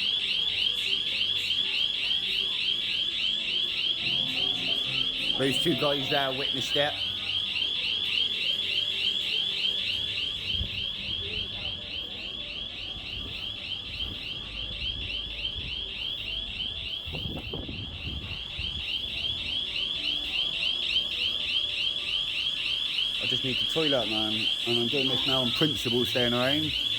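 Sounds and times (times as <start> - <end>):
warbling electronic alarm siren: 0.0 - 26.9.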